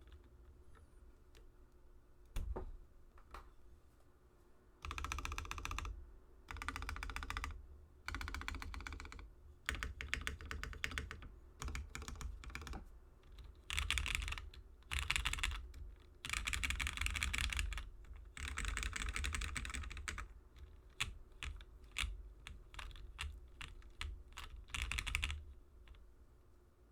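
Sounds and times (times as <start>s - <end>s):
typing on mechanical keyboard: 4.8s - 5.9s, 6.5s - 26.0s.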